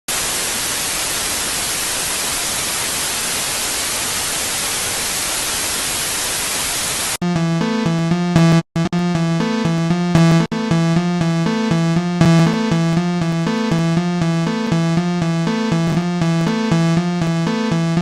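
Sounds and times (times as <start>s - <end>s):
white-noise static: 0.1s - 7.2s
synthesizer music with bass line: 7.2s - 18.0s.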